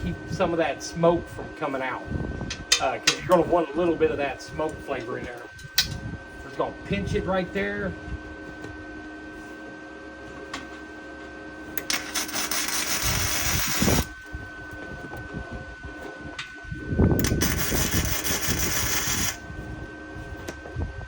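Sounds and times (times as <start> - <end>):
welder crackling sizzle: 11.7 - 14.8, 17.2 - 19.7.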